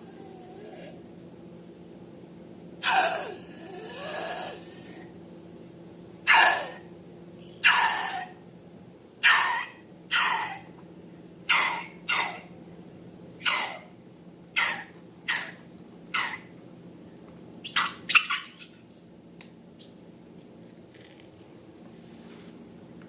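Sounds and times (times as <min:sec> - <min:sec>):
faint low hum: 0:00.0 - 0:23.0.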